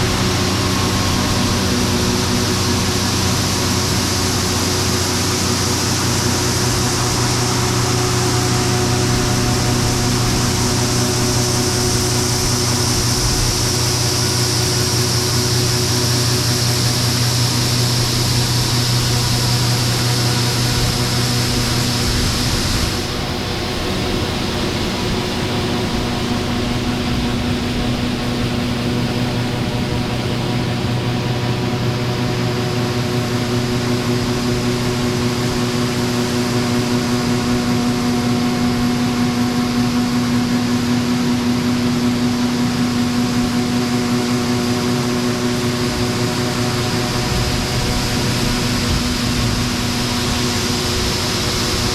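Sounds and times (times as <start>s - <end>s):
high hiss: 0.0s - 40.4s
combine harvester droning: 0.0s - 51.9s.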